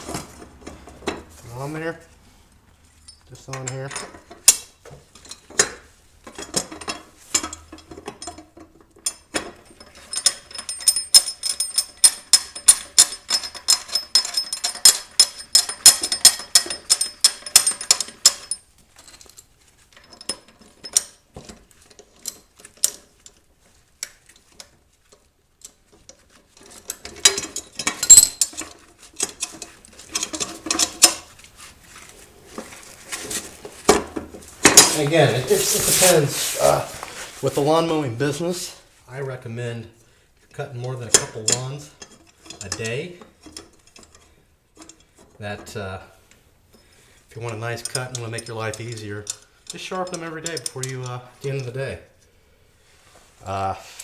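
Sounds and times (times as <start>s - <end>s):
metal clinking: 3.0s - 31.3s
metal clattering: 25.7s - 31.3s.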